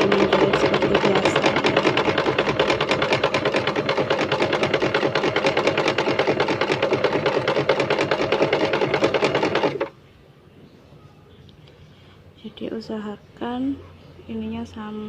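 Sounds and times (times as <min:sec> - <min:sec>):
sewing machine running: 0:00.0 - 0:09.9.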